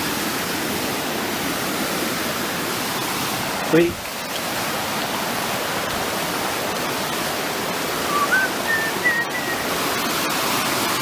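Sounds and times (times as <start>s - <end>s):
stream rushing over rocks: 0.0s - 11.0s
high whistled notes: 8.0s - 9.7s.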